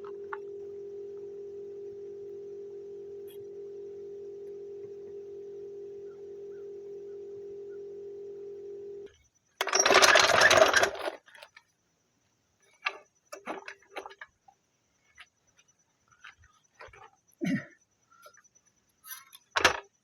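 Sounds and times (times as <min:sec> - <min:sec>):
air compressor hum: 0:00.0 - 0:09.1.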